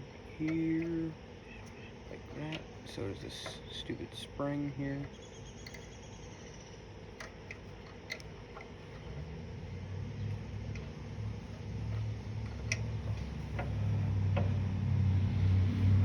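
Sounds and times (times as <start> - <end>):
small metal parts clicking: 4.9 - 9.3, 10.3 - 13.9
passing car rumble: 9.1 - 16.0.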